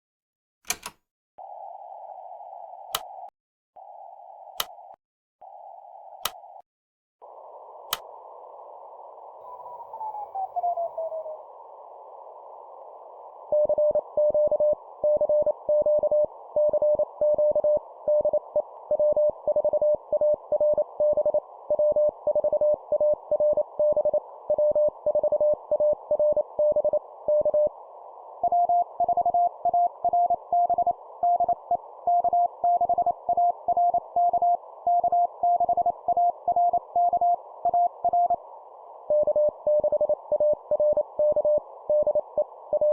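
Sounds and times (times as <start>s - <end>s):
receiver hiss: 7.2s - 42.9s
morse code beeps: 28.5s - 38.3s.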